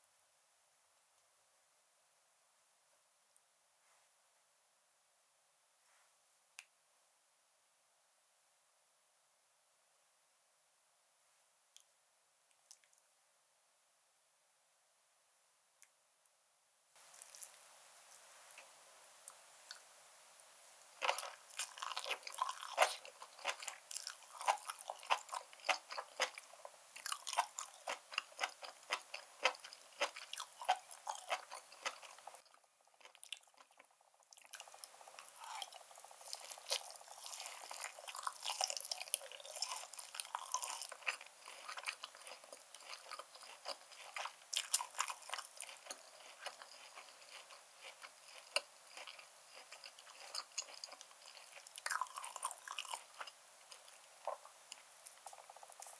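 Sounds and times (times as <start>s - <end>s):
wet chewing and biting: 21.0s - 32.4s, 34.4s - 55.9s.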